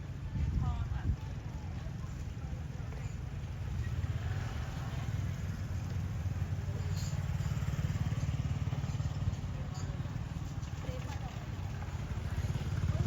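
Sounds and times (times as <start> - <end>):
small engine running: 6.2 - 13.0.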